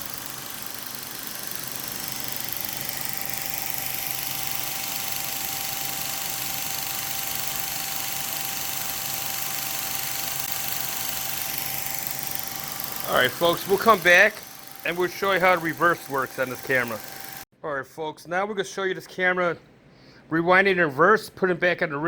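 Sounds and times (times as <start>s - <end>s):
film projector whirring: 0.0s - 17.5s.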